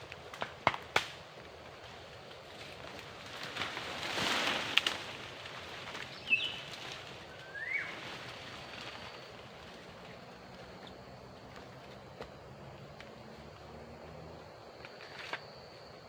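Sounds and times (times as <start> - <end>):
rustling noise: 1.8 - 10.5.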